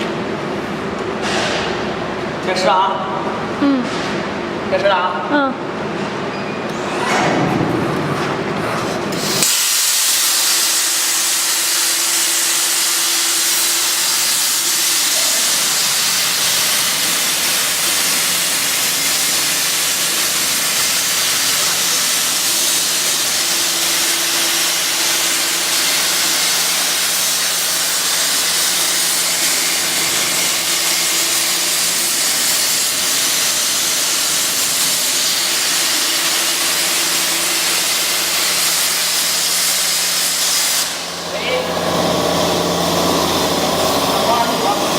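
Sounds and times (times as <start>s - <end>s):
plasma cutting torch hissing: 9.1s - 44.9s.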